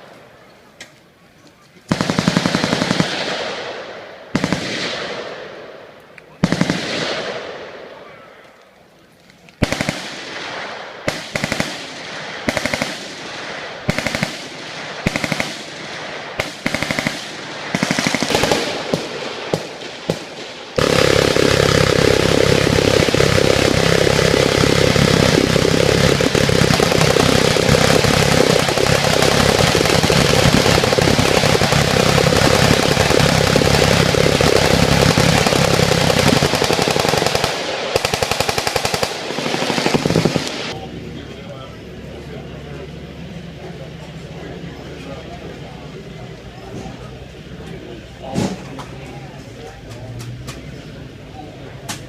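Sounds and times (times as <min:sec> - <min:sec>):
machine-gun fire: 0:01.9 - 0:07.8, 0:09.6 - 0:40.8.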